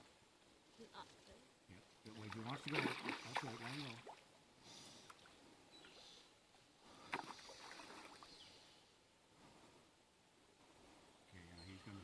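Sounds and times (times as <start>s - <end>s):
river water lapping: 2.0s - 8.8s.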